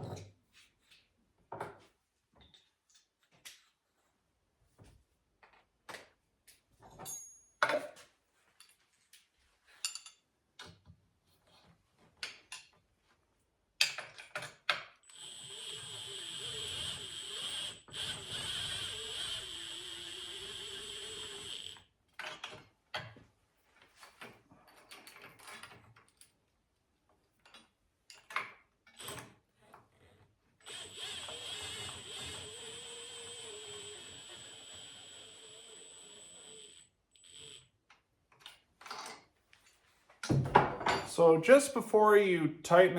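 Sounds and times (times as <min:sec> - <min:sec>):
power drill driving bolts: 0:15.1 - 0:21.8, 0:29.0 - 0:29.3, 0:30.6 - 0:37.7.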